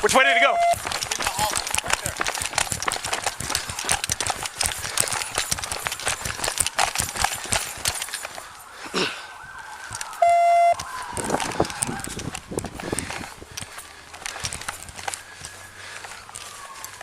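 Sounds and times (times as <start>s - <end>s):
gear rattling: 0.0s - 8.7s, 10.8s - 17.0s
running footsteps: 0.0s - 17.0s
loud electronic beep: 0.2s - 0.9s, 10.1s - 10.8s
siren-like wail falling in pitch: 8.5s - 12.3s.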